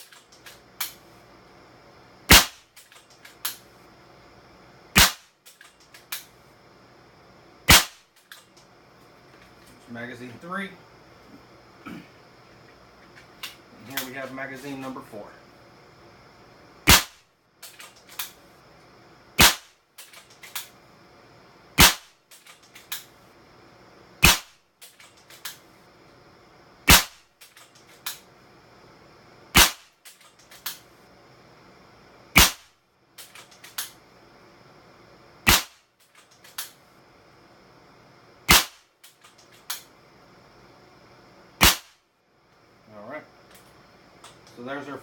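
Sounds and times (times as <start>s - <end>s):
air rifle shots: 2.3s - 2.7s, 5.0s - 5.5s, 7.7s - 8.2s, 16.9s - 17.2s, 19.4s - 19.8s, 21.8s - 22.2s, 24.2s - 24.6s, 26.9s - 27.2s, 29.5s - 30.0s, 32.4s - 32.8s, 35.4s - 35.9s, 38.5s - 38.9s, 41.6s - 42.0s.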